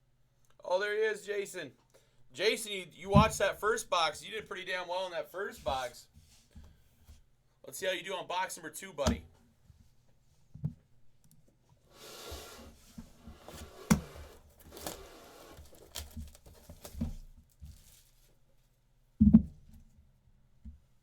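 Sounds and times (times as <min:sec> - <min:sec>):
box thump: 0:13.3 - 0:17.3
wrapping tearing and crinkling: 0:14.3 - 0:18.4.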